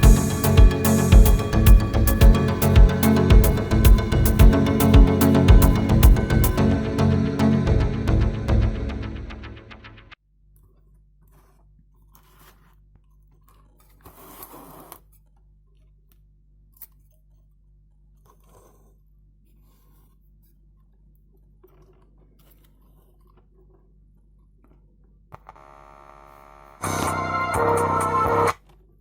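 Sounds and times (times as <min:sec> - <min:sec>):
faint music: 0:00.0 - 0:10.2.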